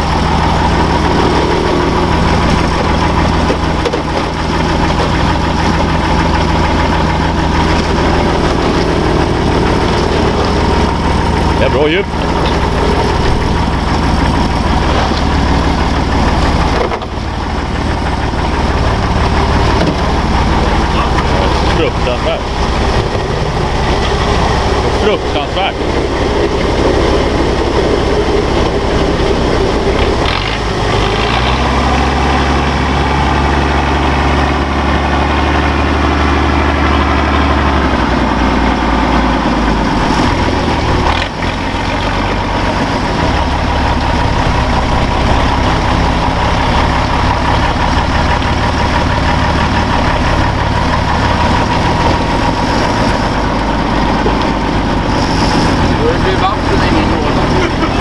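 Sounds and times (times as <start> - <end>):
truck engine running: 0.0 - 58.0.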